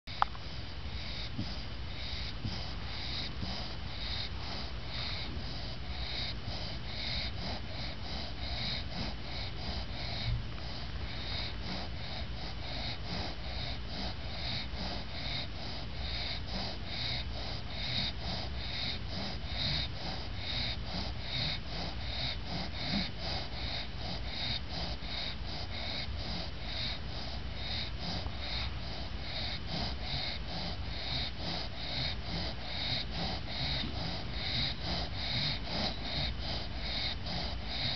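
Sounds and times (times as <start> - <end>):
dog snoring: 0.1 - 37.9.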